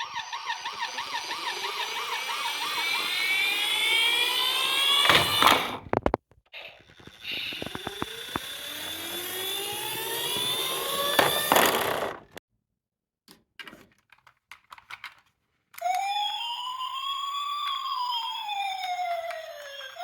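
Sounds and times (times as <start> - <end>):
toy electronic siren wailing: 0.0 - 5.8, 6.6 - 12.2, 15.8 - 20.0
toy car whine: 0.0 - 12.4, 15.8 - 20.0.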